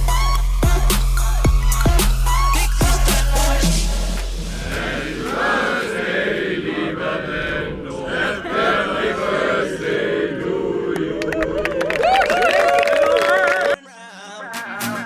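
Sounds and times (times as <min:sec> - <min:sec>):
crowd singing together: 0:02.9 - 0:13.8.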